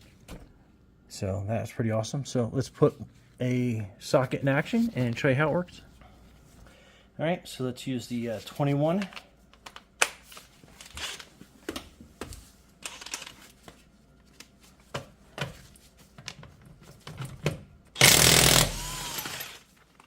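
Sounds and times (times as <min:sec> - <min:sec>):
impact wrench spinning: 0:18.0 - 0:19.7.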